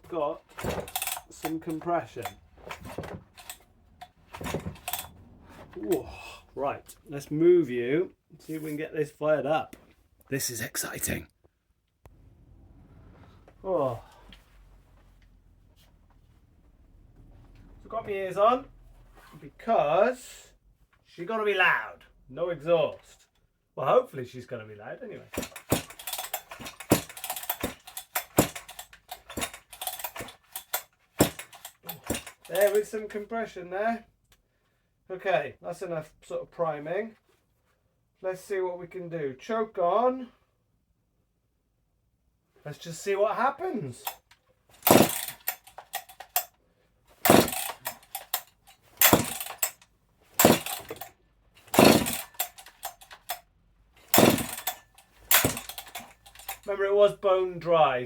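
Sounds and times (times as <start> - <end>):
chainsaw recoil starter pulls: 0.4 - 6.2, 25.3 - 32.9, 44.8 - 46.5, 47.2 - 49.8, 50.4 - 56.8
engine turning over: 0.5 - 6.6, 12.1 - 14.9, 25.4 - 32.8, 44.8 - 46.5, 47.2 - 49.8, 50.4 - 53.4, 54.0 - 56.7.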